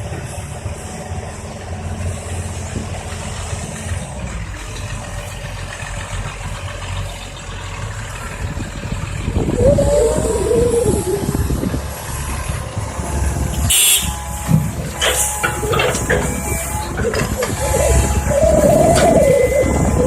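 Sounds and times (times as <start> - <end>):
excavator diesel engine rumbling: 0.0 - 20.0
wavering high whine: 9.5 - 20.0.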